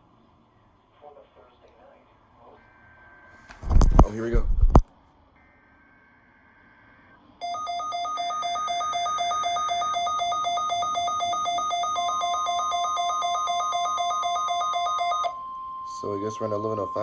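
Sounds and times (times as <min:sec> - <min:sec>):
rapidly alternating electronic tones: 0:07.4 - 0:15.4.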